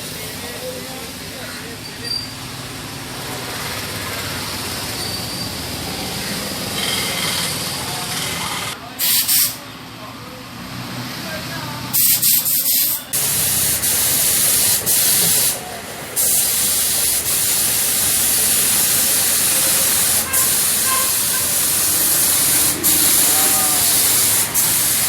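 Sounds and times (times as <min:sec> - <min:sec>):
pressure washer spraying: 0:09.0 - 0:09.6, 0:12.0 - 0:25.0.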